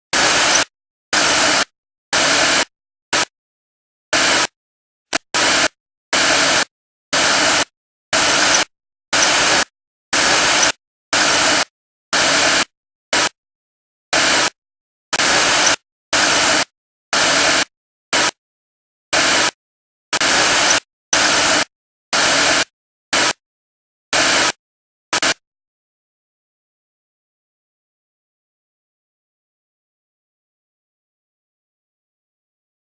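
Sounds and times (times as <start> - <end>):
static hiss bursts: 8.2 - 9.6.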